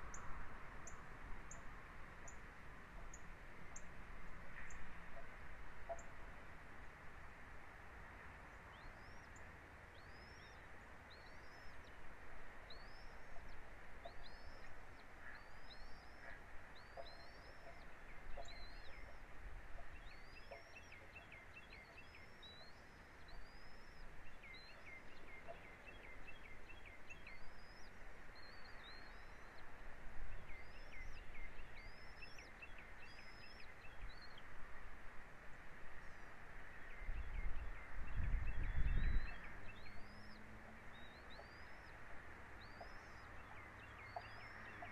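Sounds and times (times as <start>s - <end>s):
wind: 0.0s - 44.9s
bird chirping: 8.4s - 34.5s, 36.0s - 44.9s.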